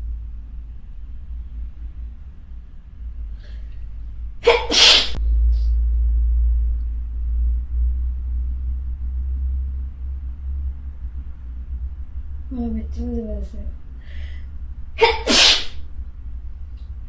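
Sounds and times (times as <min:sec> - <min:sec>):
steady low rumble: 0:00.0 - 0:17.0
person sneezing: 0:04.4 - 0:05.2, 0:15.0 - 0:15.8.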